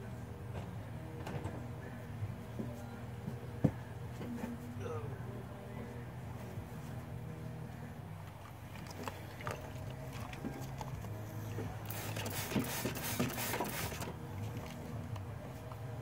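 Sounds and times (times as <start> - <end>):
steady low hum: 0.0 - 16.0
oil pouring and glugging: 8.4 - 11.2, 11.9 - 14.8.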